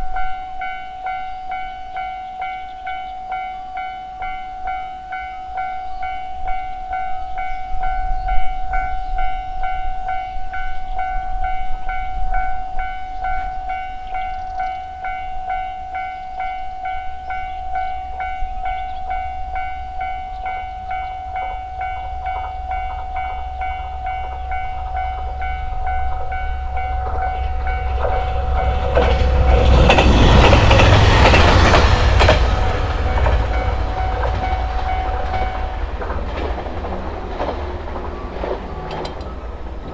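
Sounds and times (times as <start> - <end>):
diesel train passing: 6.4 - 39.9
train wheels clacking on rail joints: 21.4 - 39.9.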